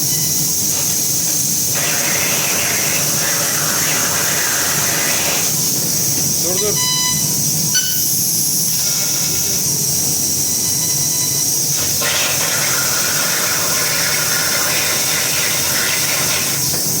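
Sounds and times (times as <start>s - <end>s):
laser cutter high-pitched hiss: 0.0s - 17.0s
broad rushing hiss: 0.8s - 6.5s.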